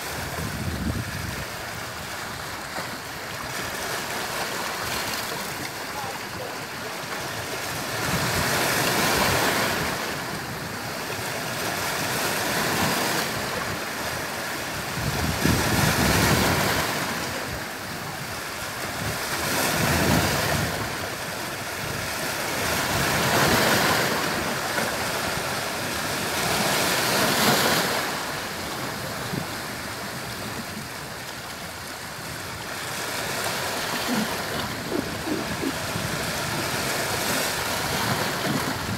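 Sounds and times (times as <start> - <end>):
sea waves breaking on shore: 0.0 - 38.9.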